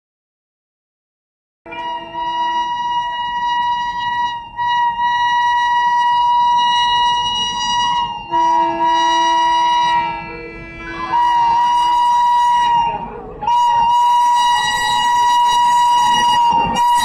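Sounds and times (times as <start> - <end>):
locomotive horn blasts: 1.7 - 17.0
low train rumble: 1.7 - 17.0.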